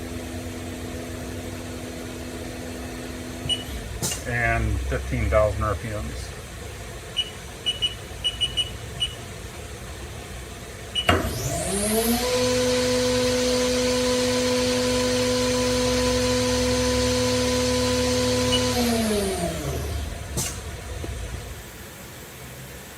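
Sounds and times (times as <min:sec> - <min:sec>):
short beeps: 0:07.2 - 0:09.2
machine spindle whining: 0:11.0 - 0:20.6.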